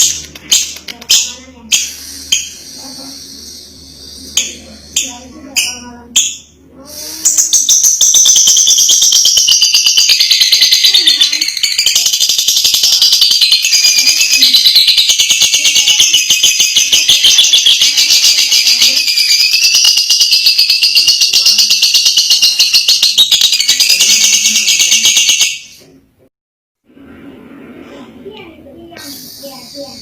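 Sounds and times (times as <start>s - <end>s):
lovebird chattering trill: 7.2s - 25.8s.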